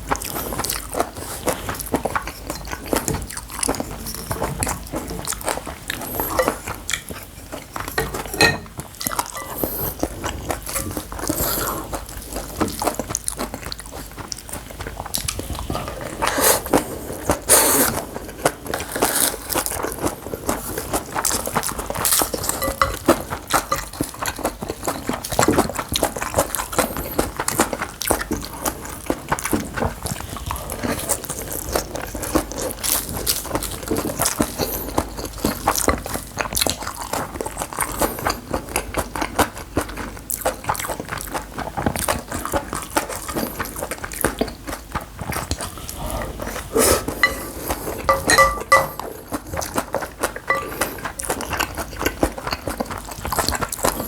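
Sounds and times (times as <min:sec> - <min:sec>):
chewing: 0:00.0 - 0:54.0
metal spoon scraping a bowl: 0:06.1 - 0:06.6, 0:07.9 - 0:08.7, 0:09.3 - 0:10.0, 0:22.5 - 0:23.1, 0:46.9 - 0:49.0, 0:50.5 - 0:50.9.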